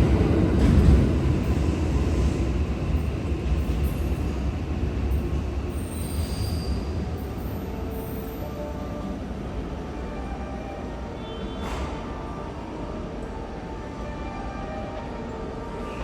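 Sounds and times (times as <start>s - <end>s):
train rumbling on rails: 0.0s - 16.0s
high wheel squeal: 5.7s - 8.3s.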